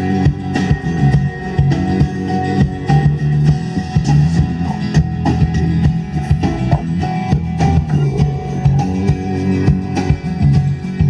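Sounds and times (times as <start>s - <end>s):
guitar-led pop music: 0.0s - 11.0s
steady drum beat: 0.0s - 11.0s.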